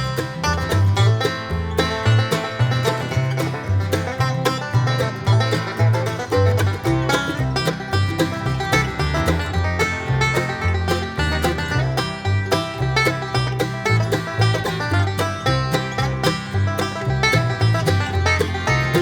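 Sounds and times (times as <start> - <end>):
bluegrass tune of picked strings: 0.0 - 19.0
stepping bass line: 0.0 - 19.0.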